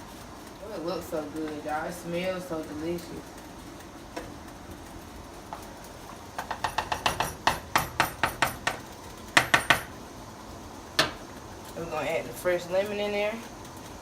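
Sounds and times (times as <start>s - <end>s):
kitchen utensil knocking: 6.4s - 8.8s.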